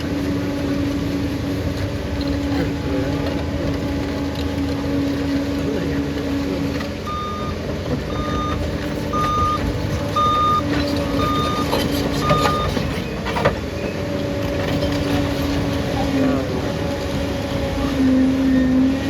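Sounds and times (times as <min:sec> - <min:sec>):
diesel engine running: 0:00.0 - 0:19.0
back-up alarm beeping: 0:07.0 - 0:12.9.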